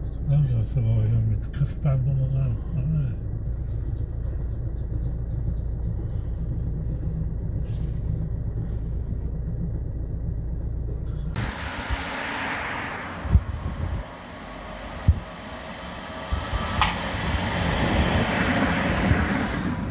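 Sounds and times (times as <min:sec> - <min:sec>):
low rumble of running tram: 0:00.0 - 0:19.9
low thumps: 0:13.1 - 0:19.2.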